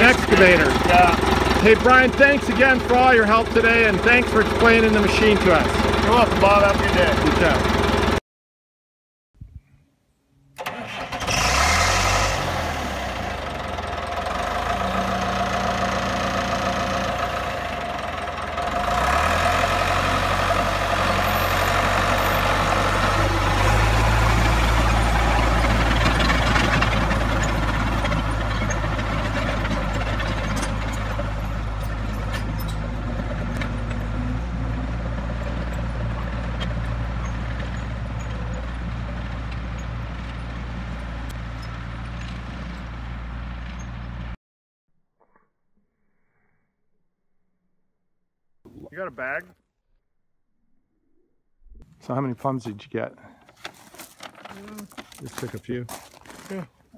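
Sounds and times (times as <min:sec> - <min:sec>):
bulldozer diesel engine revving: 0:00.0 - 0:08.2, 0:10.6 - 0:44.4.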